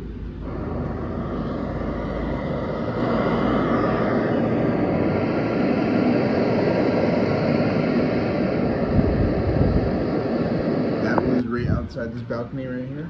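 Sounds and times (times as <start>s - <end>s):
passing motor traffic: 0.0s - 7.8s.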